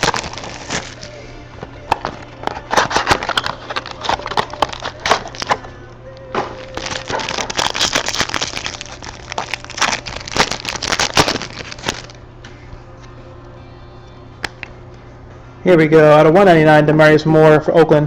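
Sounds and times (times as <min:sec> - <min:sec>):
plastic wrapping crinkling: 0:00.0 - 0:12.2.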